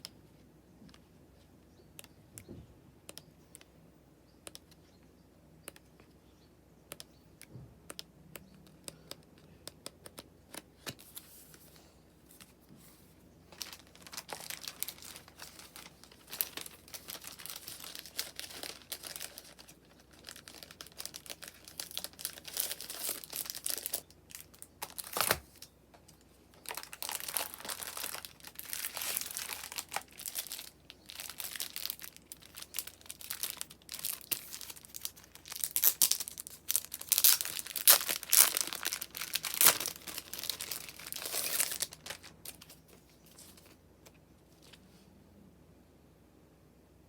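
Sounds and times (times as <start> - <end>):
packaging crinkling and tearing: 13.5 - 25.7, 26.6 - 43.8.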